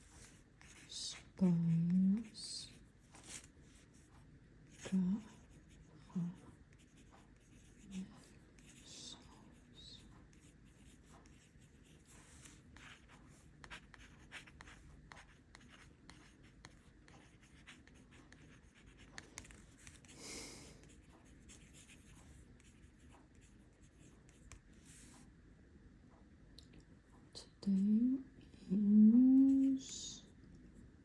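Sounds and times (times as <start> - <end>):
pen scratching on paper: 0.0 - 1.4, 4.7 - 20.2, 20.8 - 25.1.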